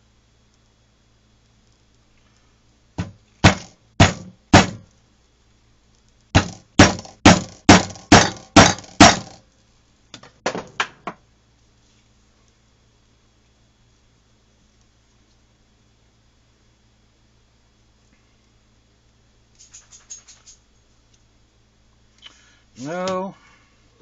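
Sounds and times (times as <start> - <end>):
hammer striking leather punch: 3.0 - 4.9, 6.4 - 9.4.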